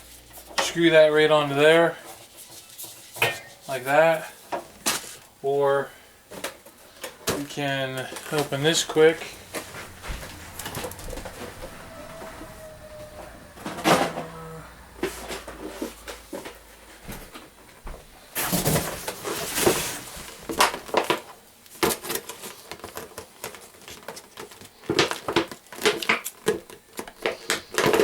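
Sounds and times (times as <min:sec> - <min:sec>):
packaging crinkling and rustling: 0:18.4 - 0:28.0.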